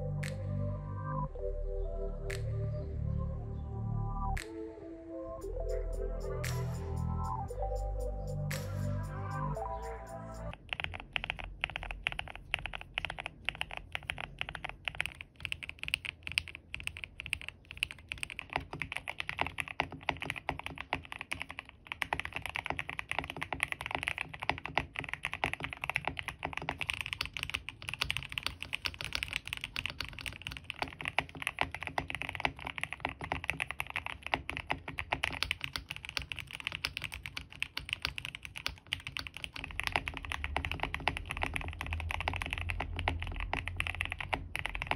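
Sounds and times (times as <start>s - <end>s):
mechanical keyboard typing clacks: 10.5s - 44.9s.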